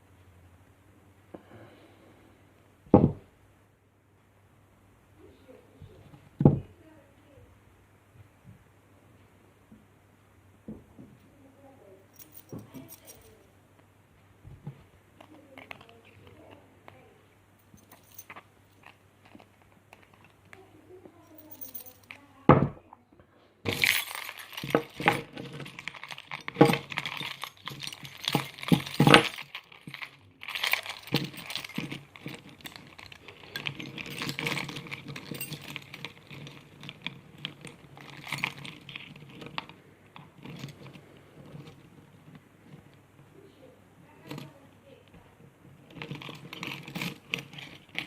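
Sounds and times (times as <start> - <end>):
metal key and tools clinking: 12.1 - 13.4, 17.6 - 20.4, 21.2 - 22.3, 23.7 - 42.1, 45.8 - 48.0.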